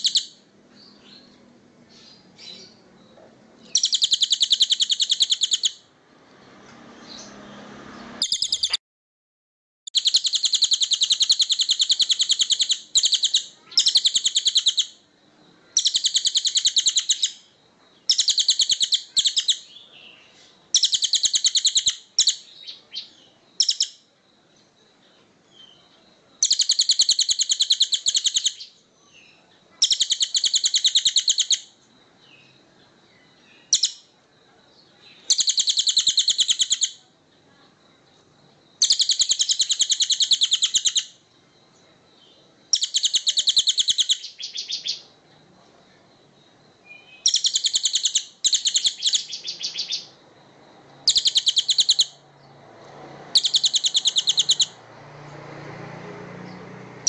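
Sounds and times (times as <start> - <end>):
songbird trilling: 0.0 - 5.9, 8.2 - 8.8, 9.9 - 15.0, 15.6 - 24.1, 25.1 - 34.1, 34.8 - 37.1, 38.8 - 41.2, 41.8 - 45.1, 46.8 - 50.2, 51.0 - 52.6, 53.3 - 54.8.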